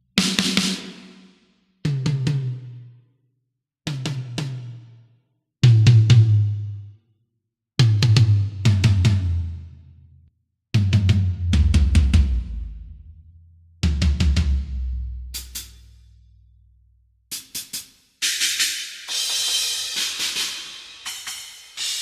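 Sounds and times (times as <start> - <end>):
drum fills: 0.2 - 1.4, 10.8 - 12.8, 13.8 - 16.0, 17.3 - 22.0.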